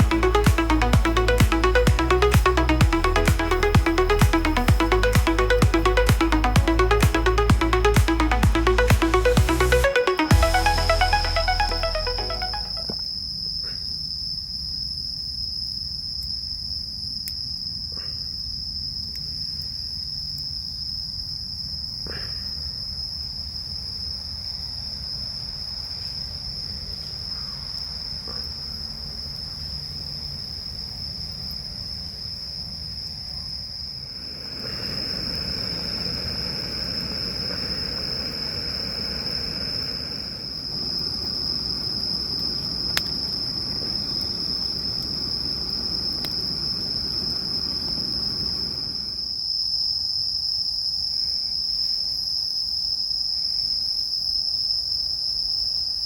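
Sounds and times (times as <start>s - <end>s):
insects trilling: 21.9s - 49.9s.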